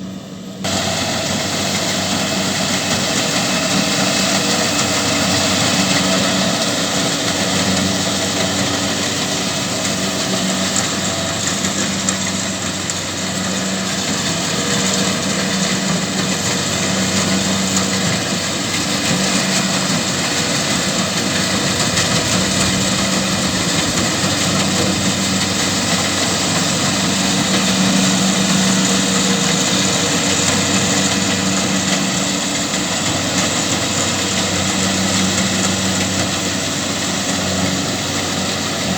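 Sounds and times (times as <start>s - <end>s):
combine harvester engine running: 0.0s - 38.9s.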